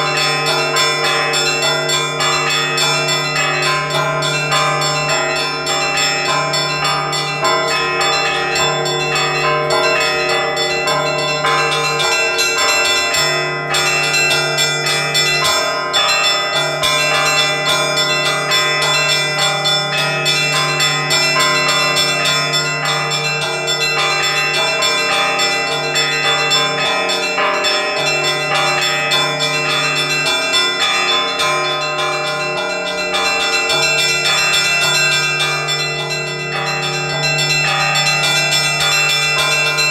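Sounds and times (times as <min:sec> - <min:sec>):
deep hum of large bell: 0:00.0 - 0:39.9
higher church bells striking: 0:00.0 - 0:39.9.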